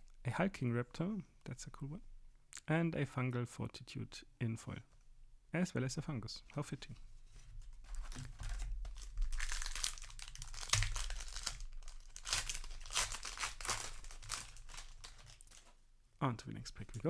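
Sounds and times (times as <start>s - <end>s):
plastic wrapper crinkling and tearing: 7.8s - 15.8s.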